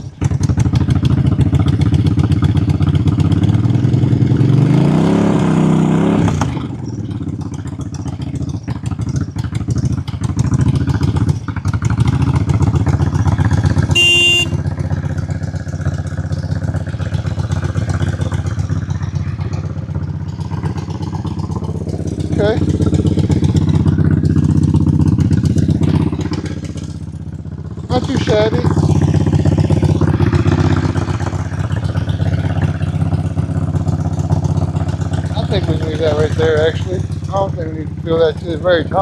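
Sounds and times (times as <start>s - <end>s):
motorcycle engine revving and idling: 0.0s - 39.0s
brief high-pitched tone: 14.0s - 14.6s.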